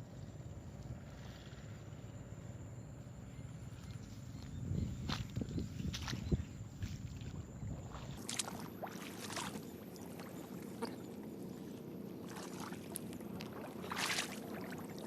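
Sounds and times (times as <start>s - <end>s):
wading through water sloshing: 5.0s - 15.0s
small water splashes: 7.1s - 15.0s.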